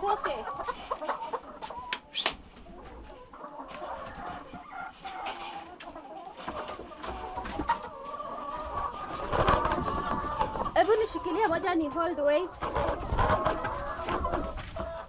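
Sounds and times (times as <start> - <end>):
hens clucking: 0.0 - 15.0.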